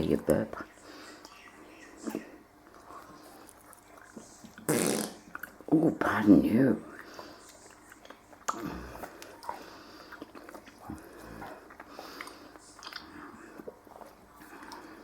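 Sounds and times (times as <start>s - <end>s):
dog mouth and nose sounds: 2.0s - 6.2s, 7.0s - 15.0s.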